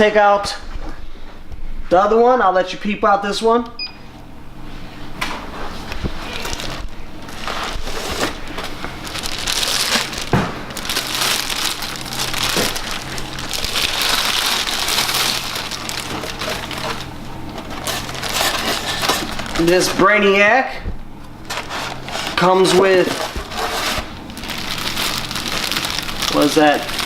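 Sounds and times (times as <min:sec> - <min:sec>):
packing material crinkling: 0:05.7 - 0:20.4, 0:21.0 - 0:27.0.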